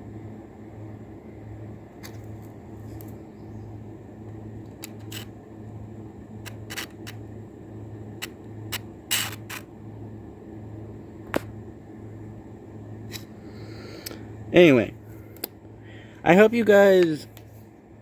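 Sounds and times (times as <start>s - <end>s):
low hum: 0.0s - 18.0s
blade scraping on sharpener: 9.1s - 9.6s.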